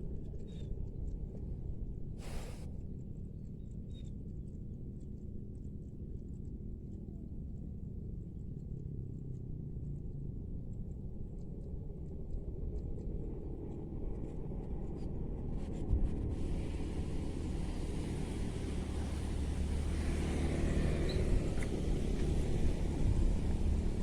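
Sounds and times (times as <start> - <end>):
distant engine rumbling: 14.1 - 24.0.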